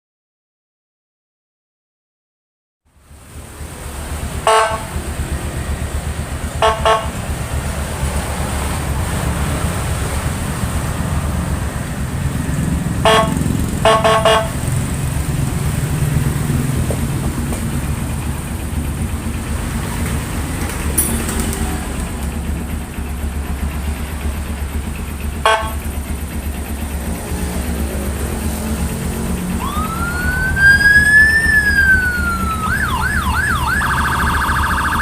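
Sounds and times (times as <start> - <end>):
siren horn blasts: 4.4 - 5.0, 6.5 - 7.4, 13.0 - 14.7, 25.4 - 25.9, 29.2 - 35.0.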